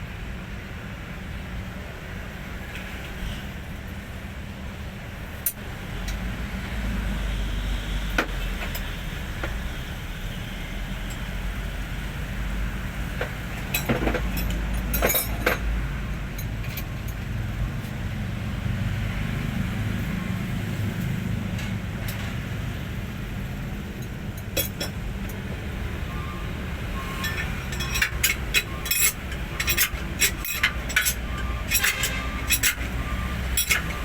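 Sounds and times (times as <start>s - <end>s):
truck diesel engine rumbling: 5.2s - 34.0s
sharp metallic clinks: 26.1s - 34.0s.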